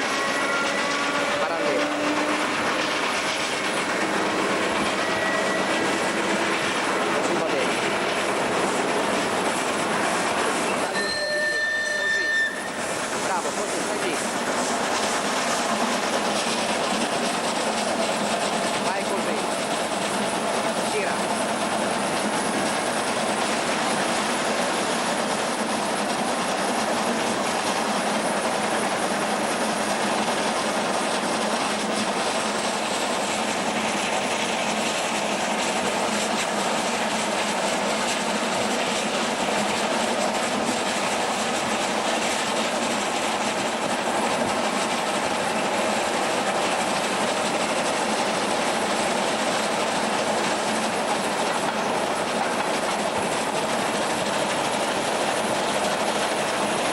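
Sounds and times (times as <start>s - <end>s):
train wheels rolling on rails: 0.0s - 56.9s.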